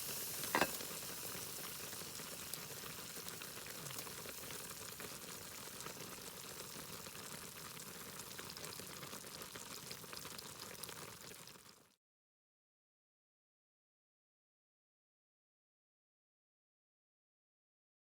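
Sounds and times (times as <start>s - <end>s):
food sizzling in a pan: 0.0s - 11.9s.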